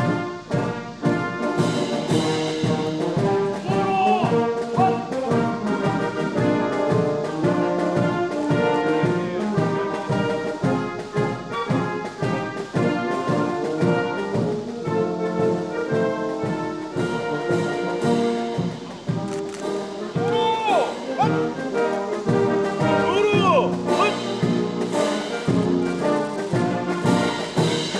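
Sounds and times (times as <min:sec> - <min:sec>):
brass band playing: 0:00.0 - 0:27.9.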